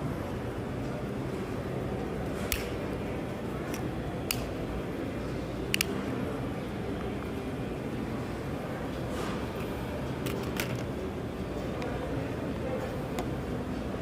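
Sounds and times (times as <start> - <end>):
steady low hum: 0.0 - 14.0
key fob plastic clicks: 5.7 - 6.0.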